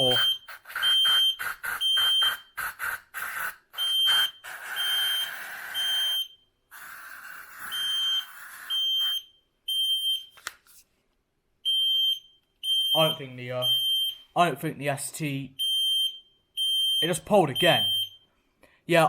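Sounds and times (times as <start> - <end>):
smoke alarm beeping: 0.0 - 2.6, 3.8 - 6.5, 7.6 - 10.4, 11.6 - 14.4, 15.6 - 18.4.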